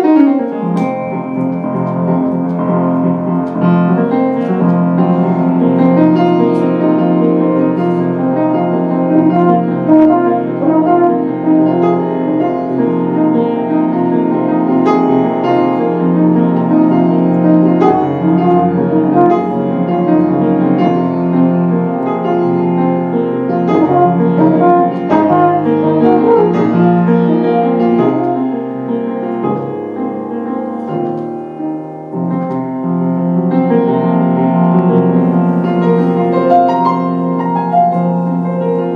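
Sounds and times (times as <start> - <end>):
piano improvising: 0.0 - 38.9
trombone long low notes: 9.0 - 12.7, 17.8 - 20.8, 23.6 - 28.6.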